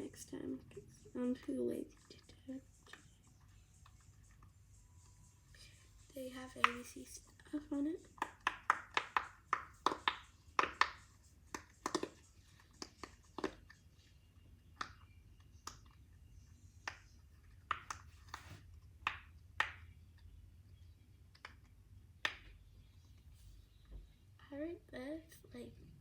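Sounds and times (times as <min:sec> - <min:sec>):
fidget toy popping: 0:06.4 - 0:07.0, 0:07.9 - 0:13.8.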